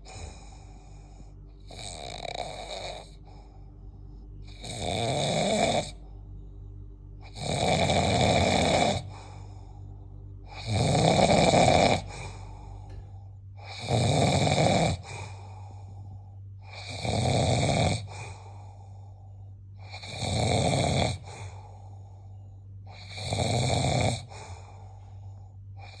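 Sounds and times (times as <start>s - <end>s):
person snoring: 0.0s - 26.0s
steady low hum: 0.0s - 26.0s.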